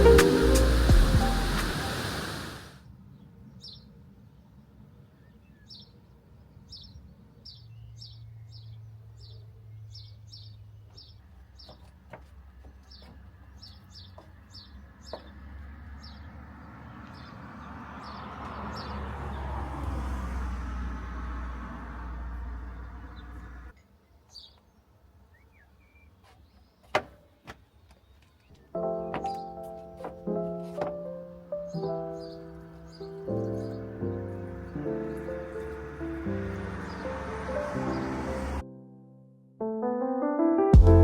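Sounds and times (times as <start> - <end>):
low outdoor rumble: 0.0 - 2.0, 21.6 - 23.7
background music: 0.0 - 2.4, 28.8 - 41.0
small bird chirping: 31.5 - 37.2.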